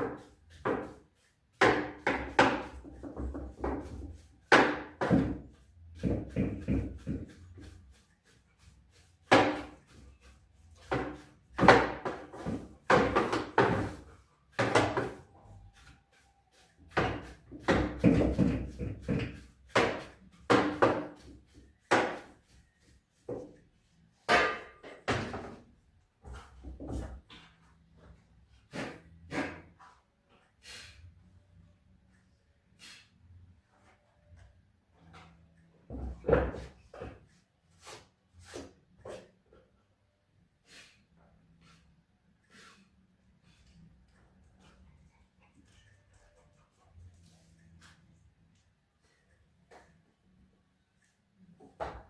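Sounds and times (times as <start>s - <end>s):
knocks and bangs on washing machine: 1.6s - 7.4s, 10.9s - 15.2s, 17.0s - 21.2s.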